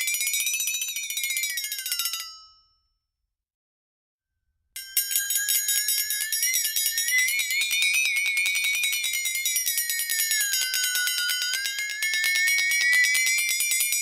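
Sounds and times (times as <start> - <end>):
bell ringing in rattling trill: 4.8 - 14.0.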